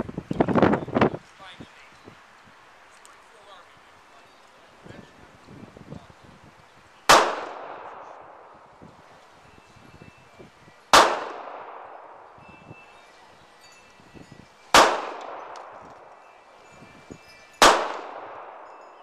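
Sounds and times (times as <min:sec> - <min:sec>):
handgun shots echoing: 0:07.1 - 0:08.3, 0:10.9 - 0:12.2, 0:14.7 - 0:16.1, 0:17.6 - 0:18.6.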